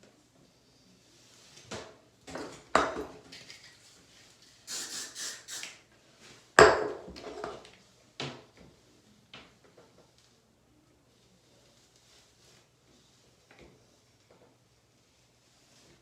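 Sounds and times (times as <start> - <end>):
short hissing rushes: 4.7 - 5.8
hair tools knocking on hard surface: 6.6 - 7.1.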